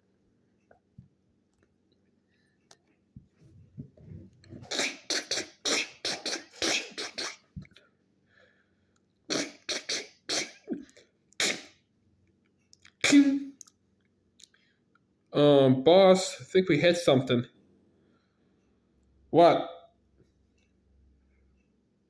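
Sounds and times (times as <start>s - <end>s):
person making hissing mouth sounds: 4.5s - 7.6s, 9.3s - 11.8s, 13.0s - 13.6s.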